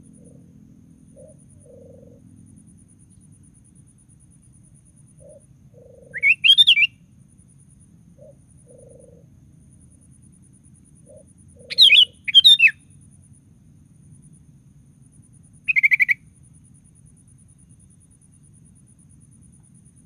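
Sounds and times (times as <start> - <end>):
bulbul singing: 5.2 - 7.0, 11.1 - 12.9, 15.7 - 16.2.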